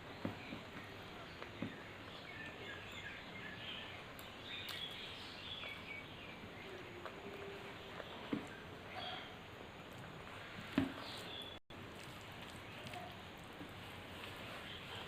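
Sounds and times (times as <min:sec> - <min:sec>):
background hiss: 0:00.0 - 0:15.0
faint bird chirps: 0:00.2 - 0:09.4.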